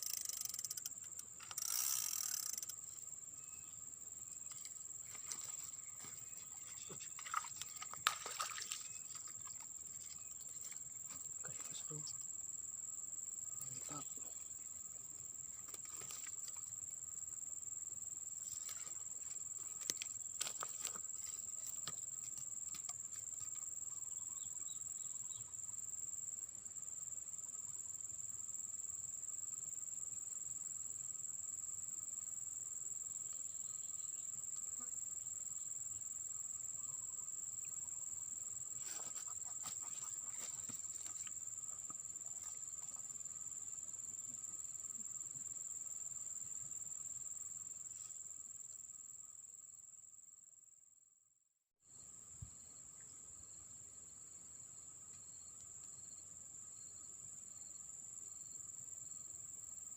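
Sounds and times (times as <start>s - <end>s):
insects shrilling: 0.0s - 3.7s.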